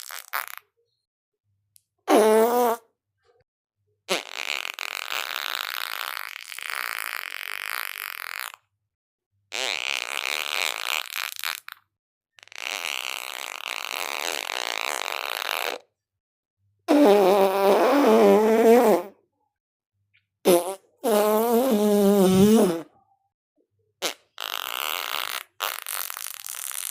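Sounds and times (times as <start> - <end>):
fart sounds: 0.0 - 0.8, 2.1 - 2.9, 4.1 - 8.6, 9.5 - 11.8, 12.4 - 15.8, 16.9 - 19.2, 20.4 - 22.9, 24.0 - 26.9.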